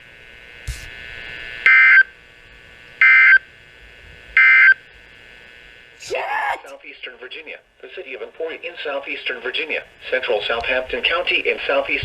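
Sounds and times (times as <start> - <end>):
buzzy digital data bursts: 0.7 - 2.0.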